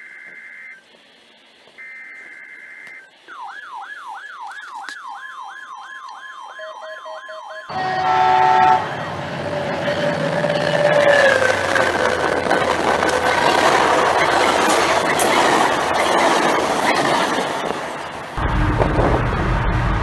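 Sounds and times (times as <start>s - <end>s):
steady tones and noise: 0.0s - 20.0s
electronic siren yelping: 1.8s - 18.4s
buzzy two-tone data burst: 6.5s - 18.4s.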